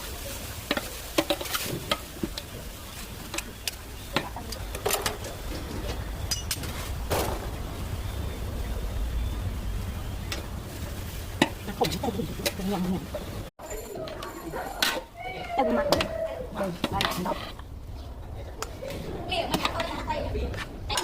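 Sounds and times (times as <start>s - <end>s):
steady low rumble: 1.8s - 13.5s, 16.5s - 21.0s
metal utensils scraping a pot: 15.7s - 17.7s.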